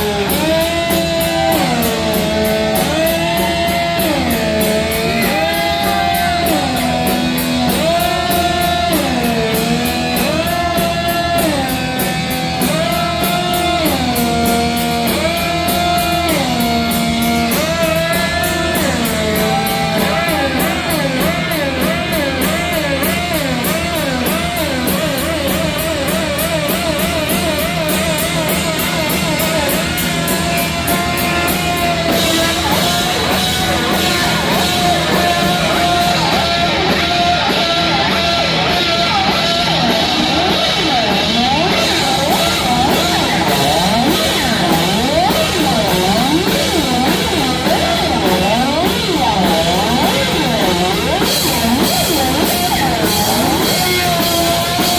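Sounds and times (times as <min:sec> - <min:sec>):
bass guitar: 0:00.0 - 0:54.9
distorted electric guitar lead: 0:00.0 - 0:54.9
drums: 0:00.0 - 0:54.9.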